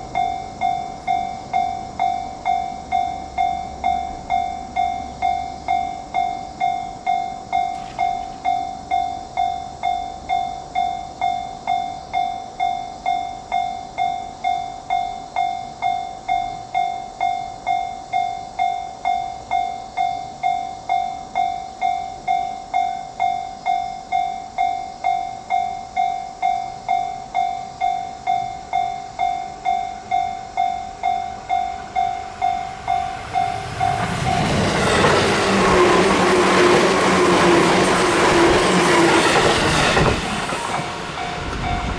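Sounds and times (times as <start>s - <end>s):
level crossing warning bell: 0.0s - 41.9s
train rushing past: 29.6s - 41.9s.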